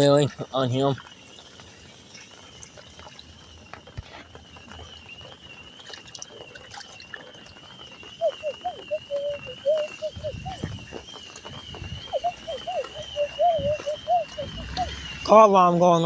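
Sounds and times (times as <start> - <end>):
water trickling and splashing: 0.0 - 16.0
car alarm siren: 8.2 - 16.0.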